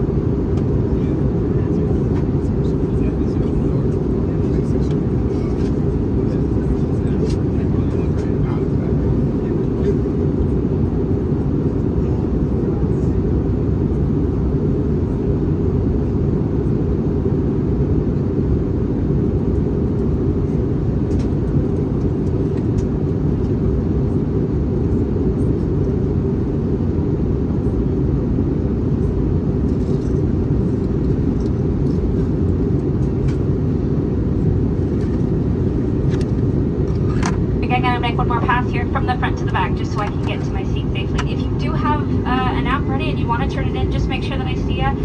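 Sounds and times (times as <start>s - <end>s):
aircraft cabin engine rumble: 0.0s - 45.0s.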